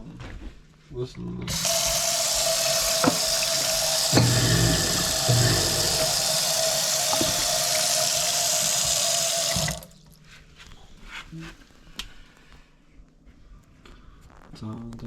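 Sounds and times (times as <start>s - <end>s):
garbage disposal humming: 1.4s - 10.2s
tap water pouring into sink: 1.5s - 10.0s.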